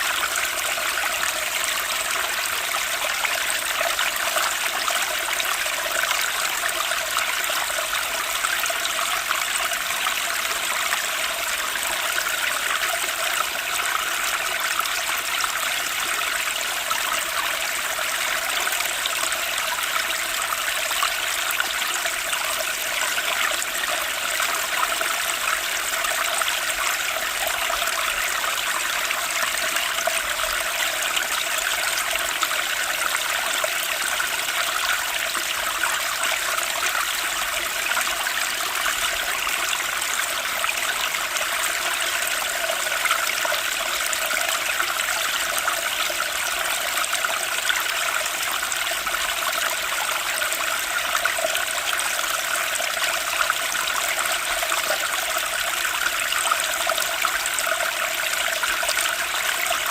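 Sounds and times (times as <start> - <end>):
stream water flowing: 0.0 - 59.9.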